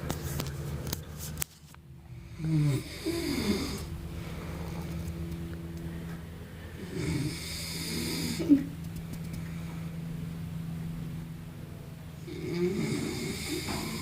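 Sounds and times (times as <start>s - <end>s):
steady low hum: 0.0s - 14.0s
person snoring: 2.1s - 5.0s, 6.7s - 8.7s, 12.3s - 14.0s.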